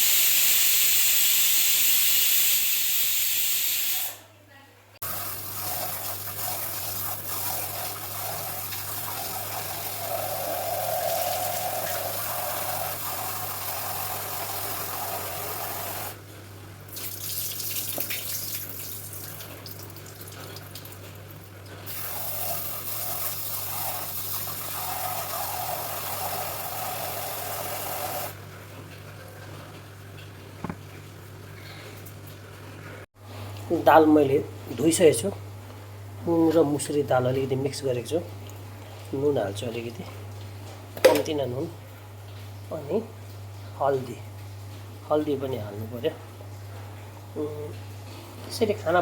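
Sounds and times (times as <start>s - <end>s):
water running from a tap: 0.0s - 4.2s, 5.0s - 16.2s, 16.9s - 28.4s.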